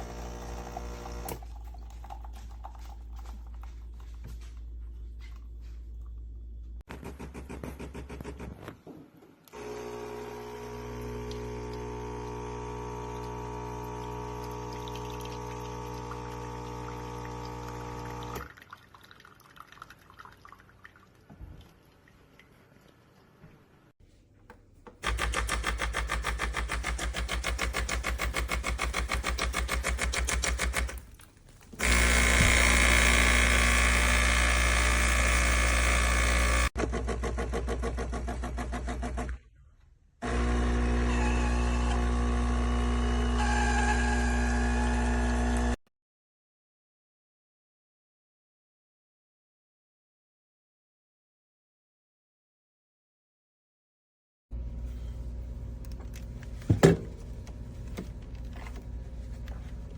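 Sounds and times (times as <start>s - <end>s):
espresso machine pump buzzing: 0.0s - 2.2s, 9.6s - 18.4s, 31.8s - 36.8s, 40.2s - 45.8s.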